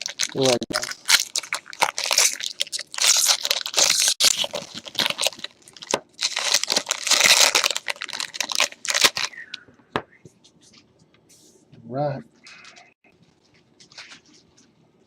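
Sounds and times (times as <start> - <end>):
packaging crinkling and tearing: 0.0 - 9.5.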